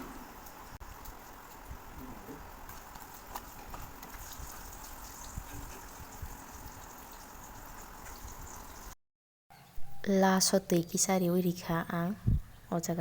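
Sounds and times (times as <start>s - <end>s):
chicken mixed by hand in marinade: 2.3s - 8.8s.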